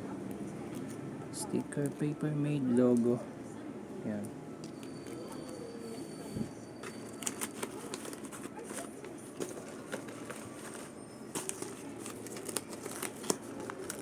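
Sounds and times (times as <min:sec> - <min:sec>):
plastic packaging rustling: 0:06.8 - 0:14.0.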